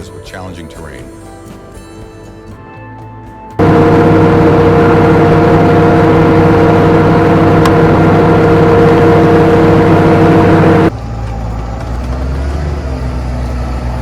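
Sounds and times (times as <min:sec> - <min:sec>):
engine running steadily: 0:03.6 - 0:14.0.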